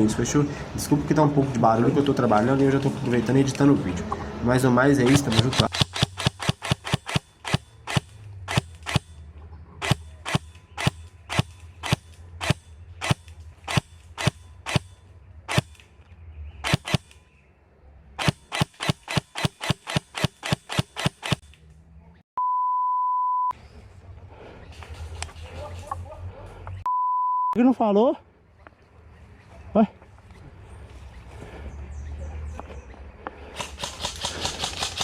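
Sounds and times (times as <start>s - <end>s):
airsoft gun shots: 5.0s - 9.1s, 9.8s - 15.8s, 16.6s - 17.2s, 18.2s - 21.4s
steady beep tone: 22.4s - 23.5s, 26.8s - 27.6s.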